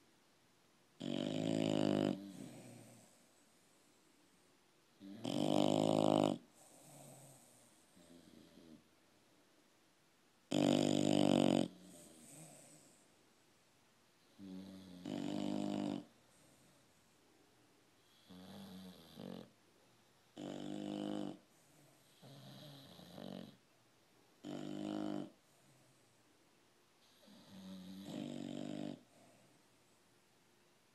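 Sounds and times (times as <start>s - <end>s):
dogs snoring: 1.0s - 3.4s, 5.0s - 8.9s, 10.5s - 13.1s, 14.2s - 16.8s, 18.0s - 19.6s, 20.3s - 23.6s, 24.4s - 26.0s, 27.0s - 29.6s.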